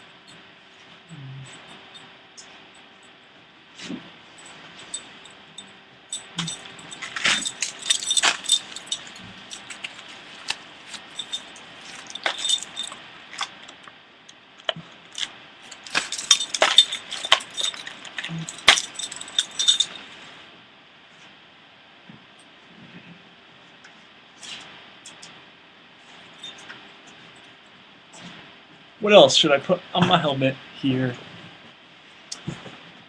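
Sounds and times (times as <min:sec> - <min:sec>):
small hard objects clattering: 0:06.4 - 0:13.7, 0:15.1 - 0:20.0.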